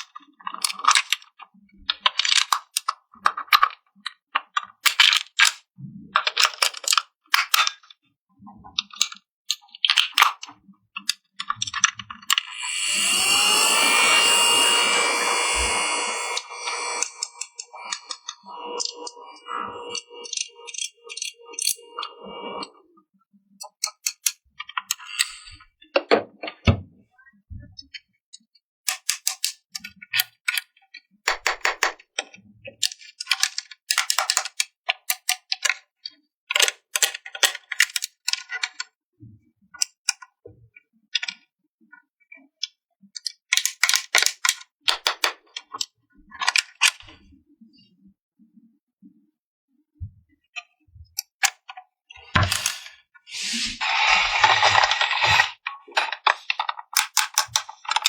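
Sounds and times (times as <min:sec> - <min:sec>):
short steady tone: 0:12.3 - 0:22.7
plastic toy pieces rattling: 0:53.8 - 0:58.0.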